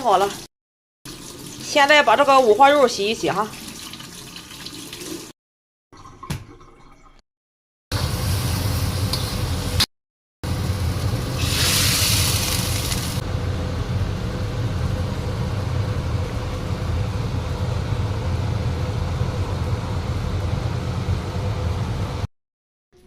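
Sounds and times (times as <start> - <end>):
range hood fan drone: 10.4 - 22.3
loud hiss: 11.3 - 13.2.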